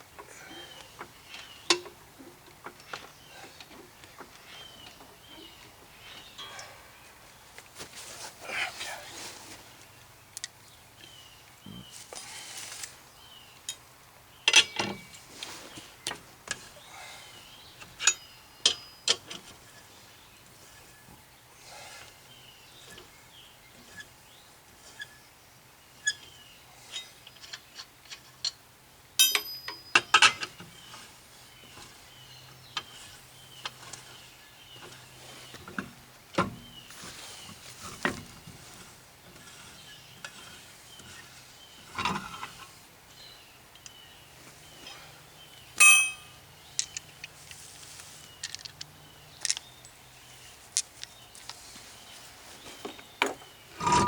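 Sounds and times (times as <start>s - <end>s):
faint birds chirping: 0.0s - 54.0s
metallic clinks of hand tools: 29.2s - 30.4s, 45.8s - 47.0s.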